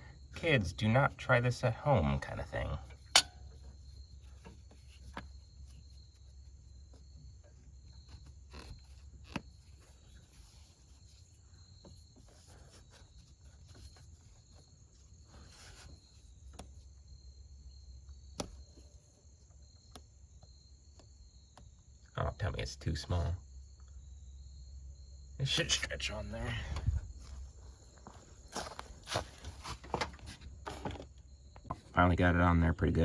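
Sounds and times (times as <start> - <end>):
crickets chirping: 0.0 - 33.0
low background hum: 0.0 - 33.0
hose clicks and taps: 3.1 - 3.4.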